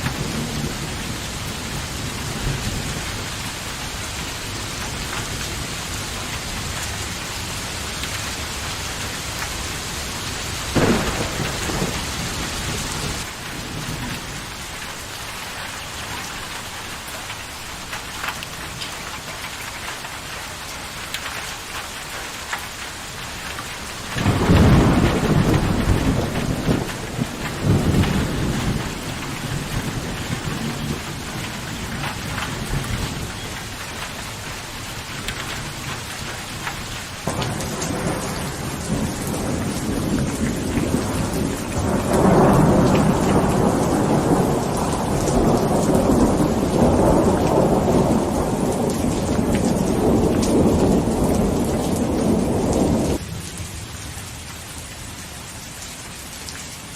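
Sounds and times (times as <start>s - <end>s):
rumble of thunder: 0.0s - 3.4s, 10.7s - 14.4s, 24.1s - 33.6s, 37.2s - 53.2s
steady rain falling: 0.0s - 56.9s
thunder peal: 10.7s - 14.0s, 24.2s - 31.1s.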